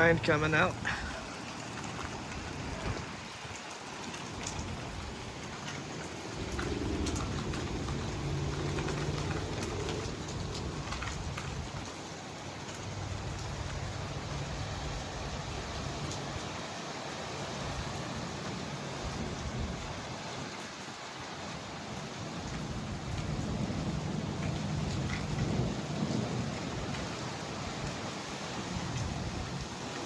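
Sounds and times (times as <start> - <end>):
rain falling: 0.0 - 30.0
raindrops hitting a surface: 0.0 - 30.0
thunder rumble: 4.3 - 11.9, 22.4 - 28.0.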